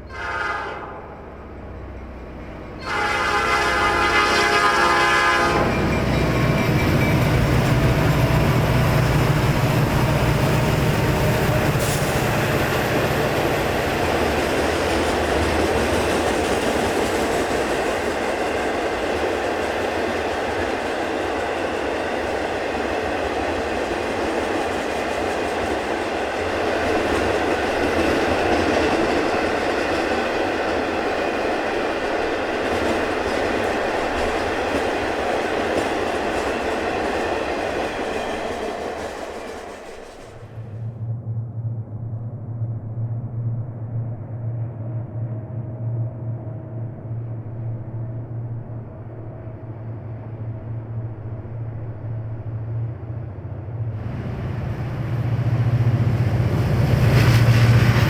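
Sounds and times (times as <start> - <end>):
diesel locomotive engine drone: 0.0 - 58.0
train cars clickety-clack: 2.8 - 40.8, 55.0 - 58.0.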